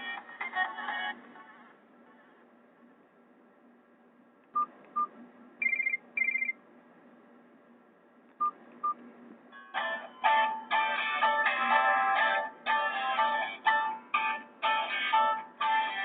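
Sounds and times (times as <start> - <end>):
phone ringtone beeps: 5.6 - 6.6
warbling phone trills: 5.6 - 6.6.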